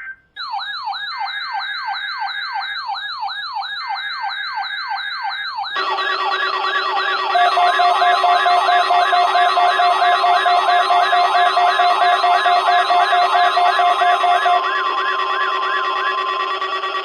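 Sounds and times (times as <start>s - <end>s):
electronic alarm siren: 0.4s - 17.0s
fast-pulsing low tone: 5.8s - 17.0s
steady electronic tones: 5.8s - 17.0s.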